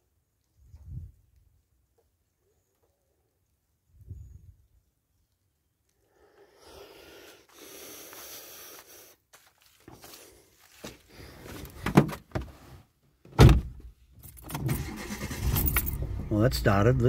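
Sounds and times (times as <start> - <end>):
rustling and handling noises: 9.3 - 12.5.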